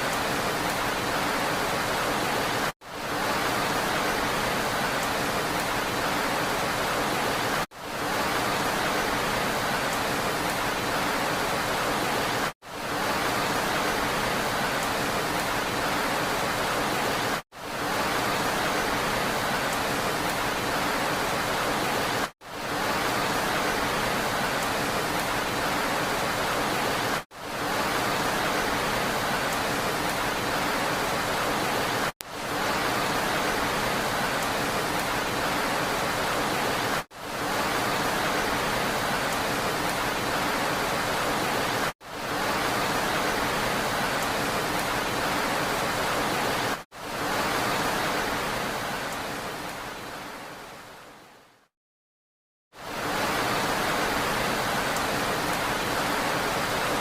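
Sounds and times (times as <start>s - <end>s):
steady rain: 0.0s - 51.7s, 52.7s - 57.0s.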